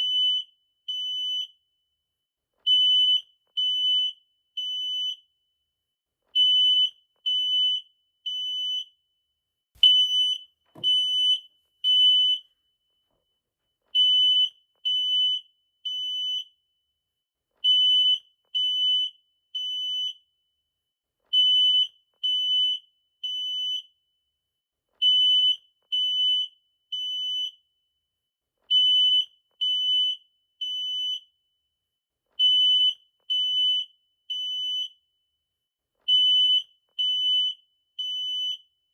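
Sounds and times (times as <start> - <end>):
smoke detector alarm beeping: 0.0 - 1.7, 2.7 - 5.4, 6.3 - 9.1, 9.8 - 12.6, 13.9 - 16.6, 17.7 - 20.2, 25.0 - 27.7, 28.7 - 31.3, 32.4 - 35.0, 36.1 - 38.7.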